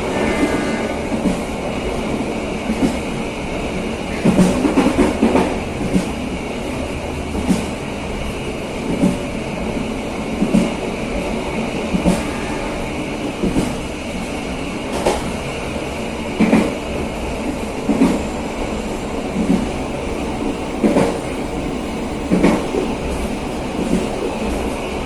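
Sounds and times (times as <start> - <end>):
train wheels rumbling on rail: 18.8 - 25.0.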